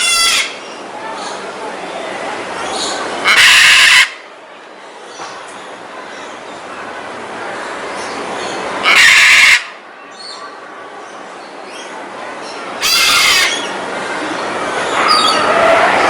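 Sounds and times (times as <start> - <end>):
macaw squawking: 8.8 - 9.6, 12.8 - 13.7.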